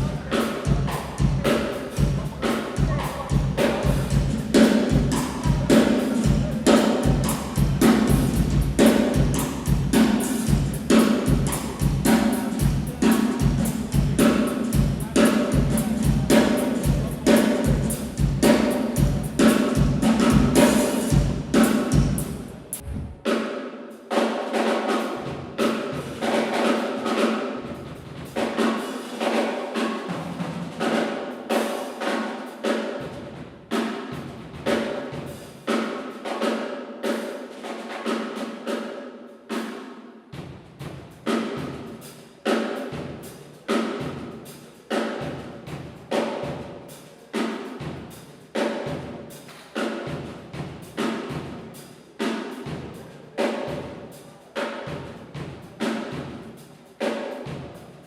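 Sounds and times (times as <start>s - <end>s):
acoustic drum kit playing: 0.0s - 58.0s.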